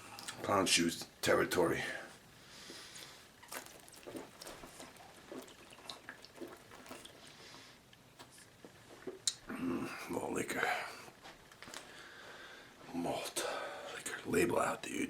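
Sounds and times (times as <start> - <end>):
low hiss: 0.0 - 15.0
wet clicks of drinking: 3.0 - 9.4.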